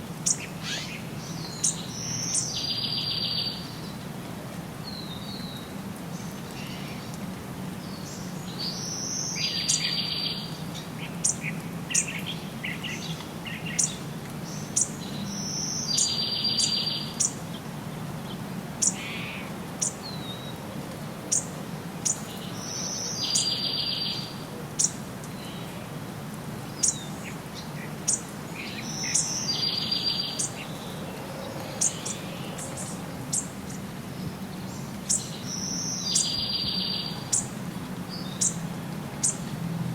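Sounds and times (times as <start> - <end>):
bird trilled song: 0.2 - 3.6, 35.1 - 37.5.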